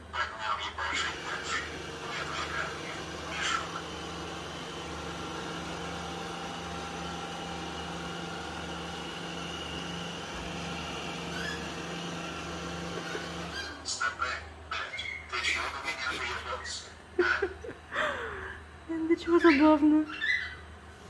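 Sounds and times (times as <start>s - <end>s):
robot vacuum motor whir: 1.0s - 13.8s.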